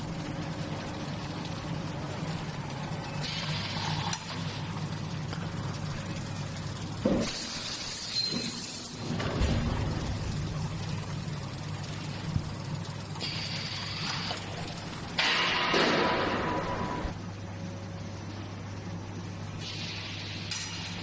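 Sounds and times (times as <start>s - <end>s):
machinery humming: 0.0s - 21.0s
hiss: 7.2s - 9.0s.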